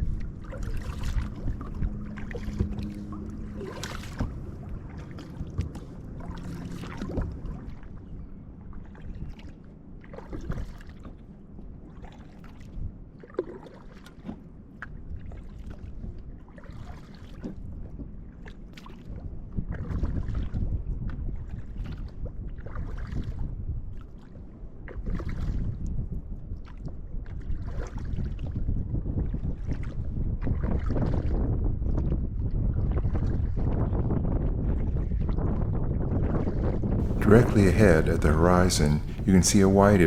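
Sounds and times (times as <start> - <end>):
kayak paddle splashing water: 0.3 - 8.0, 8.8 - 11.2, 13.2 - 14.4.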